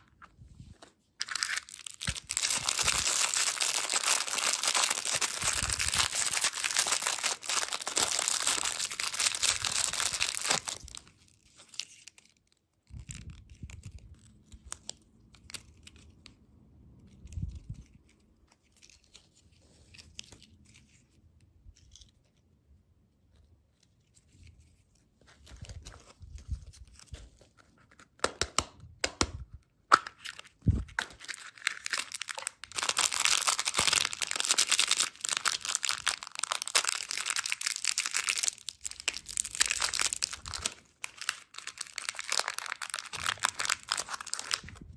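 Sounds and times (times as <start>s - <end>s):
plastic packaging crinkling and tearing: 0.9s - 16.3s, 29.9s - 44.9s.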